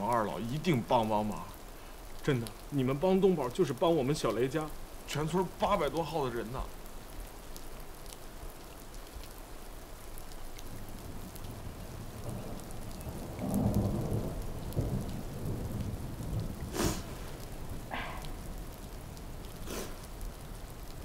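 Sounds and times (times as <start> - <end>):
steady rain: 0.0 - 21.0
thunder rumbling: 10.7 - 21.0.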